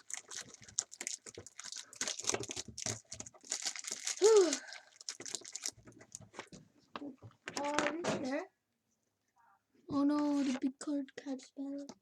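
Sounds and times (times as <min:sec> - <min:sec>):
foil packs crinkling: 0:00.0 - 0:06.2.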